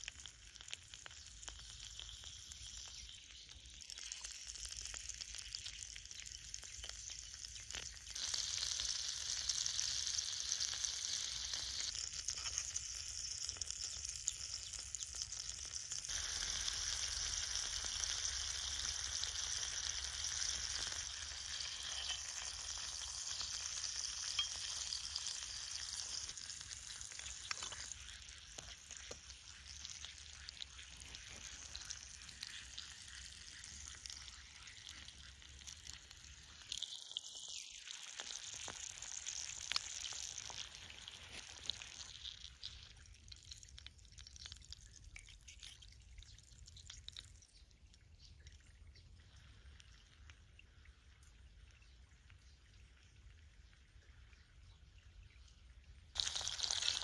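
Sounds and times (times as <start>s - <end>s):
food sizzling in a pan: 0.0s - 42.9s, 56.2s - 57.0s.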